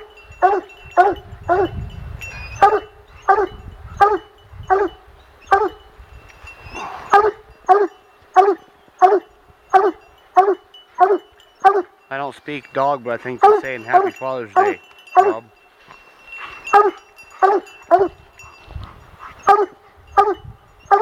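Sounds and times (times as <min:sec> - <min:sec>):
dog baying: 0:00.0 - 0:01.8, 0:02.5 - 0:05.8, 0:07.1 - 0:12.0, 0:13.3 - 0:15.4, 0:16.4 - 0:18.6, 0:19.2 - 0:21.0.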